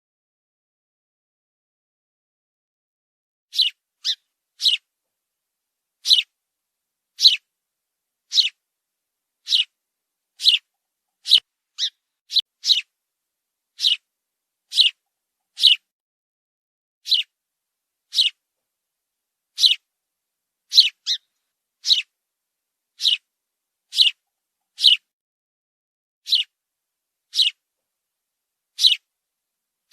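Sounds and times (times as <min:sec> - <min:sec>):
sparrow chirping: 0:03.5 - 0:04.9, 0:06.0 - 0:06.3, 0:07.2 - 0:07.5, 0:08.3 - 0:08.6, 0:09.4 - 0:09.8, 0:10.4 - 0:13.0, 0:13.7 - 0:14.1, 0:14.7 - 0:15.9, 0:17.0 - 0:17.4, 0:18.1 - 0:18.4, 0:19.5 - 0:19.9, 0:20.7 - 0:22.1, 0:22.9 - 0:23.3, 0:23.9 - 0:25.1, 0:26.2 - 0:26.6, 0:27.3 - 0:27.6, 0:28.7 - 0:29.1.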